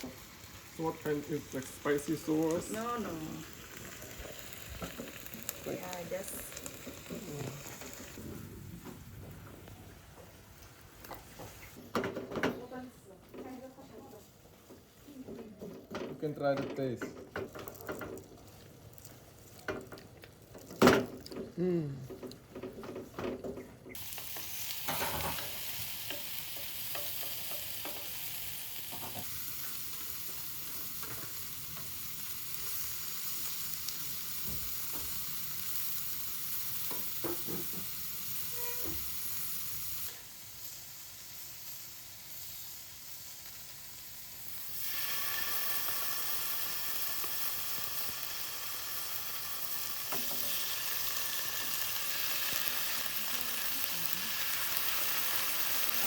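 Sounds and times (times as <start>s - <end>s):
food sizzling in a pan: 0.0s - 12.8s, 13.4s - 56.0s
utensil knocking in a pan: 36.9s - 37.9s.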